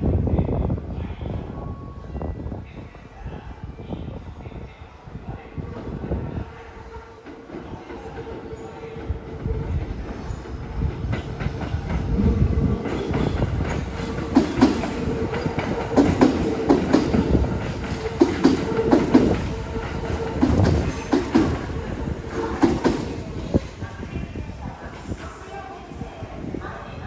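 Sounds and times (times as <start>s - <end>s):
train rumble: 0.0s - 27.0s
train wheels clicking over rail joints: 10.1s - 23.4s.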